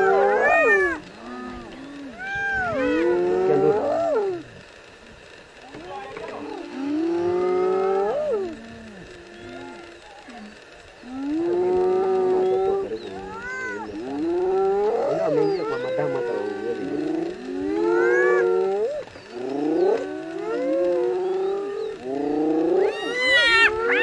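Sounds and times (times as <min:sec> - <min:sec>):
hyenas whooping and crying: 0:00.0 - 0:04.5, 0:11.2 - 0:24.0.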